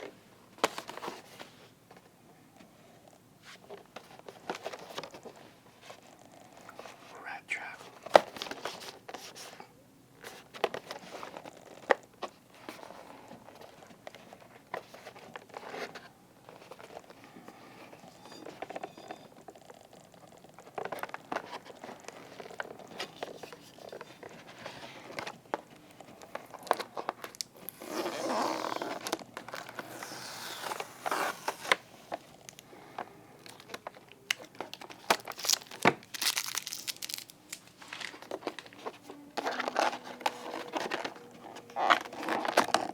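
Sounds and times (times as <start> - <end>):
plastic and cardboard crinkling: 0.0 - 2.2, 3.4 - 7.0, 7.6 - 19.6, 20.2 - 42.9.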